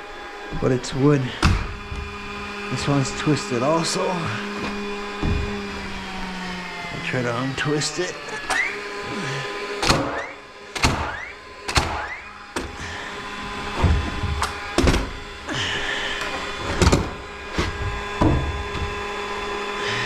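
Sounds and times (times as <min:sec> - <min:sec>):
knocks and thuds on lumber: 0:01.4 - 0:06.6, 0:09.8 - 0:10.2, 0:10.8 - 0:12.8, 0:13.7 - 0:15.3, 0:16.6 - 0:19.2.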